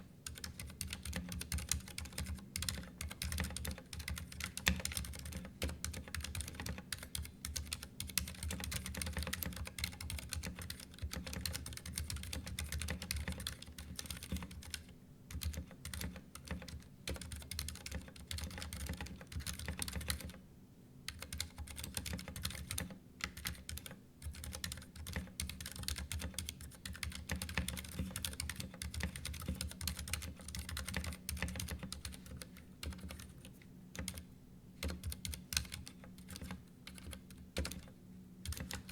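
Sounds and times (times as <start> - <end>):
typing on mechanical keyboard: 0.2 - 20.4, 21.1 - 38.9.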